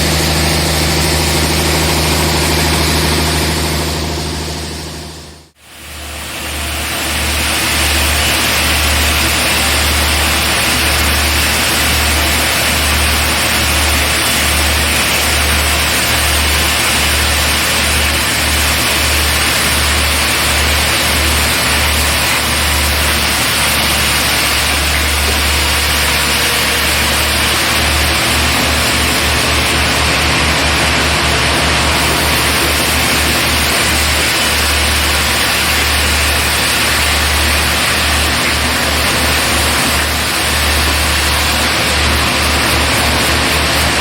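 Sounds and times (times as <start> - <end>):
pulsing low hum: 0.0 - 10.6
saw hissing: 0.0 - 44.0
sawmill engine noise: 0.0 - 44.0.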